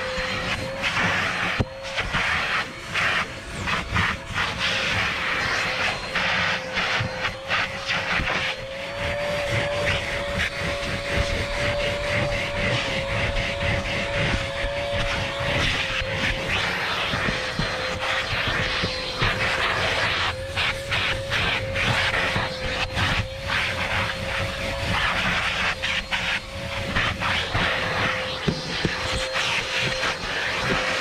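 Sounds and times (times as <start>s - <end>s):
vacuum cleaner running: 0.0s - 31.0s
nozzle knocking on carpet: 15.0s - 30.9s.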